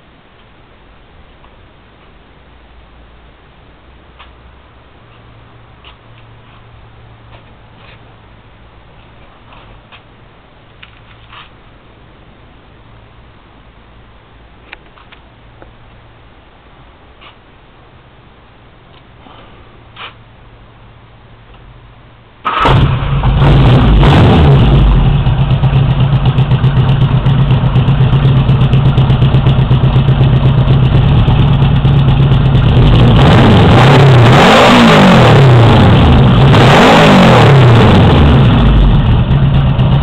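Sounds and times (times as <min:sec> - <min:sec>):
motorcycle engine idling and revving: 0:22.5 - 0:40.0.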